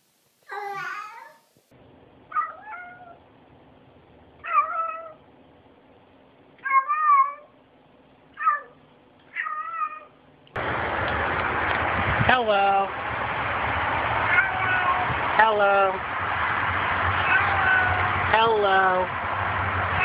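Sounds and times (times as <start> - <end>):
cat meowing: 2.3 - 3.2, 4.4 - 5.2, 6.6 - 7.5, 8.4 - 10.1, 14.3 - 15.1, 17.2 - 18.1
loud rushing noise: 10.6 - 20.0.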